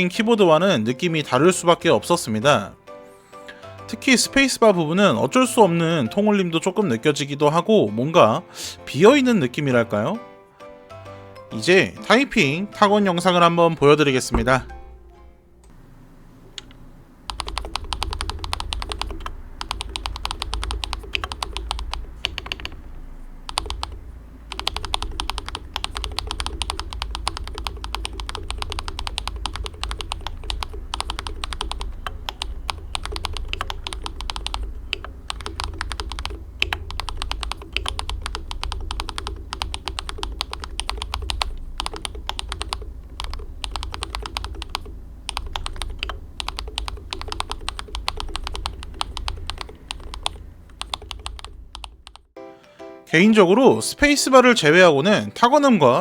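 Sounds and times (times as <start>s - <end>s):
hollow spacebar thock: 14.3s - 15.8s
fast keyboard typing: 16.6s - 52.4s.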